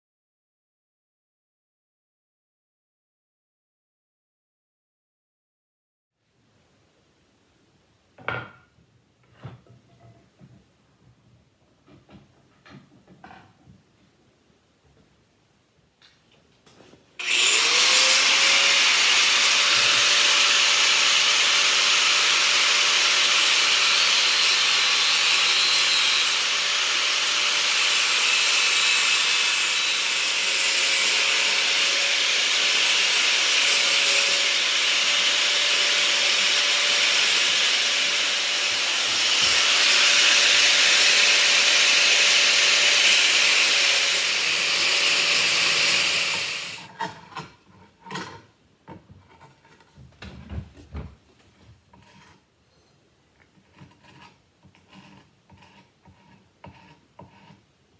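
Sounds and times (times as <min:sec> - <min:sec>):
power tool motor running: 0:17.2 - 0:46.9.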